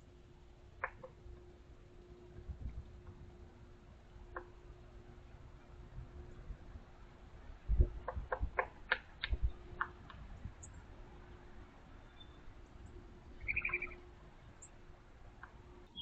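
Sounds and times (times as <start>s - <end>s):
bird chirp: 12.0s - 14.0s, 14.6s - 14.8s.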